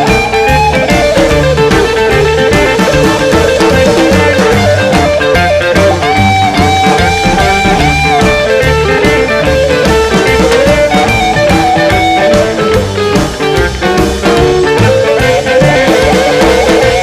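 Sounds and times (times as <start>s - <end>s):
bass: 0.0s - 17.0s
drums: 0.0s - 17.0s
electric guitar lead line: 0.0s - 17.0s.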